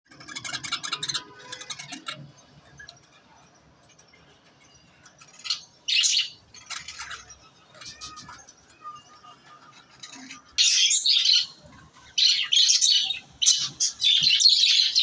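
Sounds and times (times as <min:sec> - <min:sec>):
budgerigars chirping: 0:05.4 - 0:07.3, 0:10.6 - 0:15.0.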